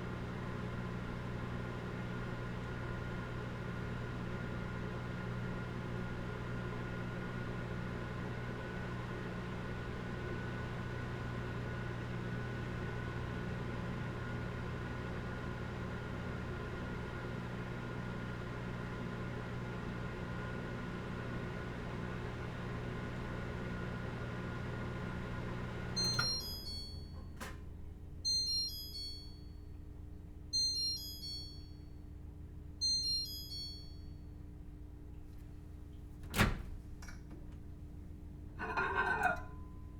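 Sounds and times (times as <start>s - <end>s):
microwave oven humming: 0.0s - 39.9s
microwave click: 26.0s - 27.7s
short high beeps: 28.3s - 29.5s, 30.6s - 31.7s, 32.8s - 34.1s.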